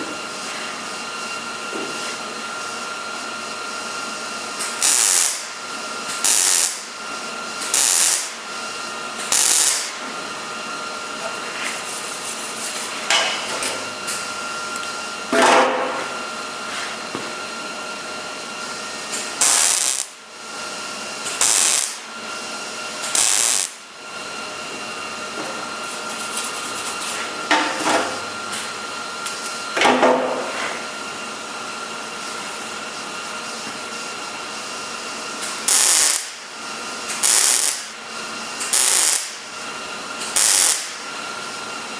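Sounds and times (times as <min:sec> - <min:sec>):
welder tack welding bursts: 0:04.6 - 0:07.0, 0:07.6 - 0:08.5, 0:09.2 - 0:10.0, 0:19.1 - 0:20.2, 0:21.3 - 0:22.1, 0:23.0 - 0:23.9, 0:35.4 - 0:38.0, 0:38.6 - 0:39.5, 0:40.2 - 0:41.1.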